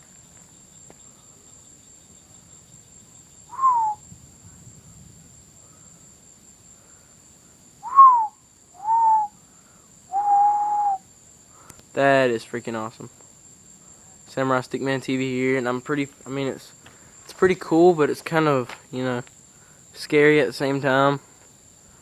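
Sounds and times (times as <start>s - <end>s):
crickets chirping: 0.0s - 22.0s
short whistle-like calls: 3.4s - 4.1s, 7.8s - 9.4s, 10.1s - 11.1s.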